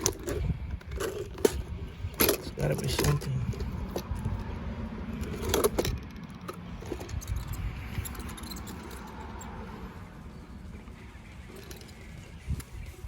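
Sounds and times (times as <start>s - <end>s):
plastic parts clicking and rattling: 0.0s - 9.5s.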